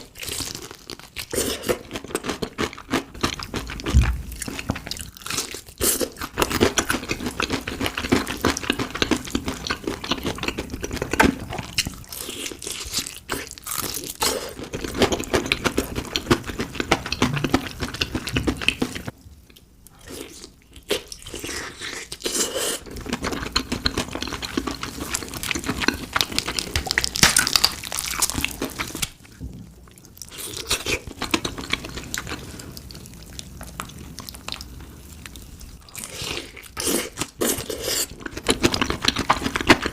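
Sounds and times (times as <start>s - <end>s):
crunching fried chicken: 0.0s - 19.1s, 20.0s - 29.3s.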